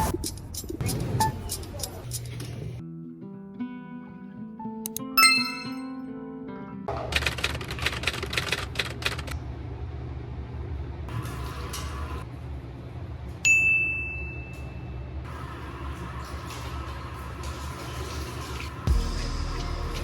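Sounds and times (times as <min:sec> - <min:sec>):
bright ding: 0:05.2 - 0:06.0.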